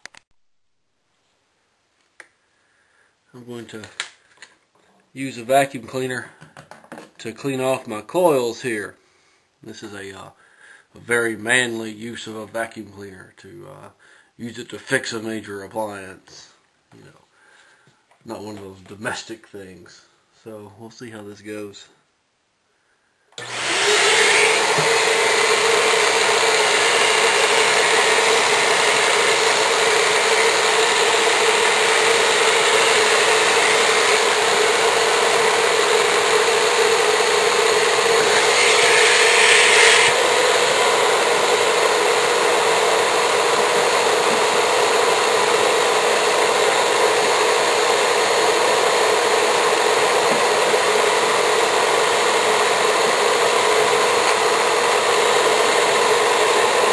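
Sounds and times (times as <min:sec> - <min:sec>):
vacuum cleaner running: 0:23.4 - 0:56.9.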